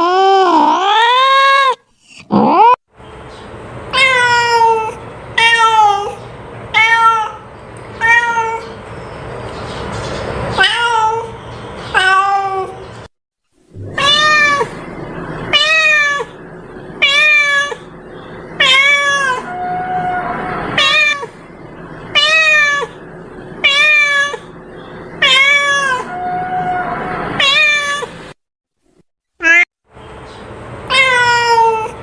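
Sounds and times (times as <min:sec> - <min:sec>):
cat meowing: 0:06.8 - 0:07.4, 0:08.0 - 0:08.8, 0:11.9 - 0:12.8, 0:13.8 - 0:14.8, 0:15.5 - 0:16.3, 0:17.0 - 0:17.9, 0:18.6 - 0:21.3, 0:22.2 - 0:23.0, 0:23.6 - 0:24.5, 0:25.2 - 0:28.1, 0:29.4 - 0:29.6, 0:30.9 - 0:32.0.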